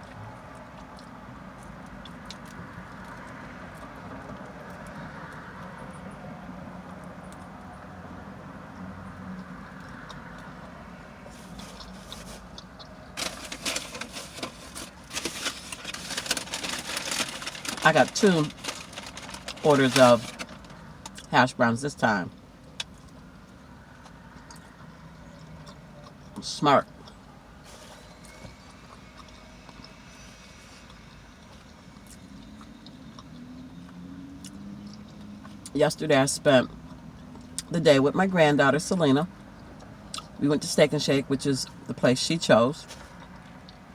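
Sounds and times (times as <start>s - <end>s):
chewing crunches and clicks: 0.0s - 5.7s, 9.3s - 10.8s, 11.4s - 14.1s, 22.3s - 27.3s, 28.2s - 30.0s, 30.9s - 35.8s, 36.7s - 37.7s, 39.6s - 40.4s
crunchy food being eaten: 9.3s - 21.3s
paper packaging crackling: 11.3s - 12.5s, 13.2s - 20.8s.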